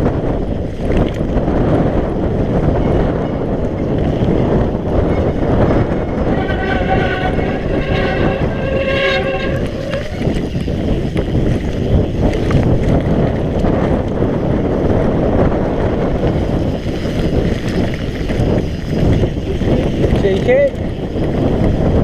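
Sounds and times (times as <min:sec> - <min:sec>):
bike trail rumble: 0:00.0 - 0:22.0
wind: 0:00.0 - 0:22.0
bike disc brakes honking: 0:04.9 - 0:11.1.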